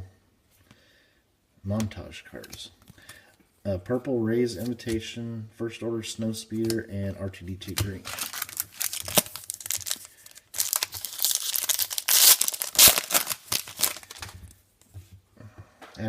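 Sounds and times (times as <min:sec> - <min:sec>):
foil wrapper crinkling and tearing: 0:07.7 - 0:14.5.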